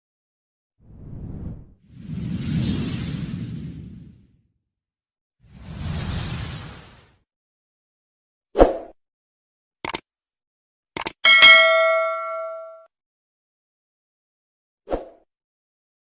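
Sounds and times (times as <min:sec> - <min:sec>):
quick clicks: 0:09.8 - 0:10.0, 0:11.0 - 0:11.2
bell-like ding: 0:11.2 - 0:12.9.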